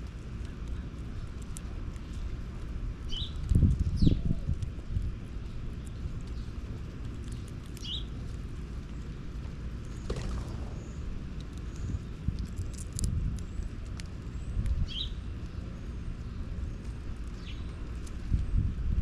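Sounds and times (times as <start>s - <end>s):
low rumble: 0.0s - 19.0s
bird chirp: 3.1s - 4.4s, 7.2s - 8.1s, 9.9s - 12.2s, 14.3s - 18.6s.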